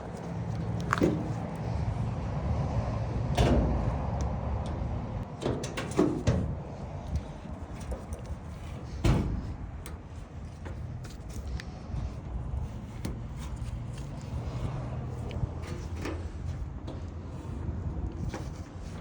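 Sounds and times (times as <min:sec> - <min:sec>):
metal panels knocking and scraping: 0:00.7 - 0:01.6, 0:05.2 - 0:19.0.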